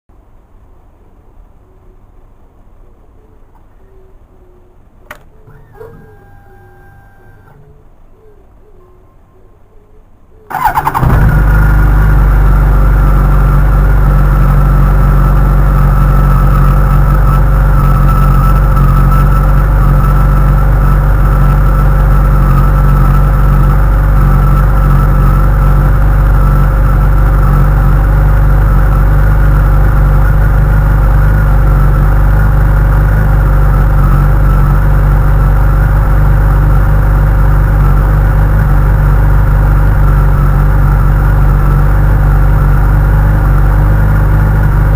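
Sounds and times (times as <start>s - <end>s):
motorcycle engine starting and idling: 5.0s - 7.9s, 10.5s - 44.9s.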